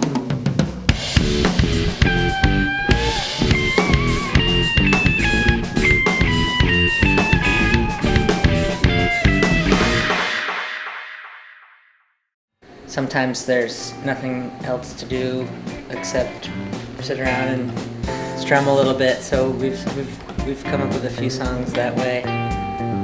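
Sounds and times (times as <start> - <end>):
drum kit: 0.0 - 11.0, 14.1 - 23.0
stepping melody line: 0.9 - 10.3
guitar: 0.9 - 10.5, 12.9 - 23.0.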